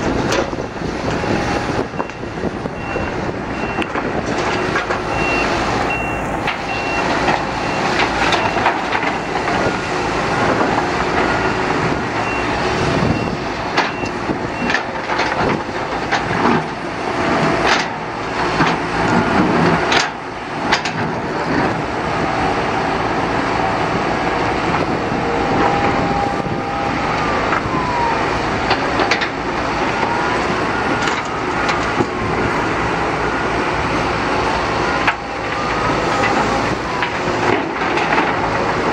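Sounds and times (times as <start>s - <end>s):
diesel engines running: 0.0s - 38.9s
reversing beeper: 1.2s - 3.9s, 4.5s - 9.6s, 11.3s - 14.8s, 24.8s - 28.6s.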